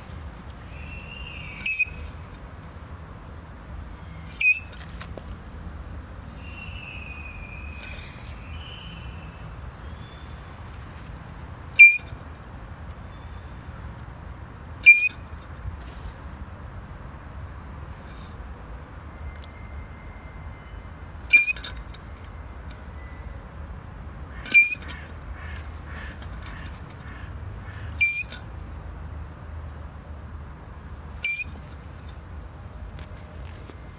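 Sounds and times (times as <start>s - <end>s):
shock absorber squeaking: 0.0s - 2.5s, 4.2s - 5.2s, 11.6s - 12.3s, 14.8s - 15.4s, 21.2s - 23.2s, 24.3s - 28.6s, 31.1s - 32.2s.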